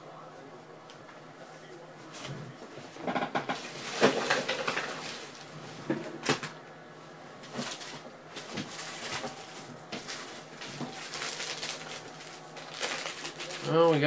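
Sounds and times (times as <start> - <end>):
card packaging rustling: 7.6 - 13.9.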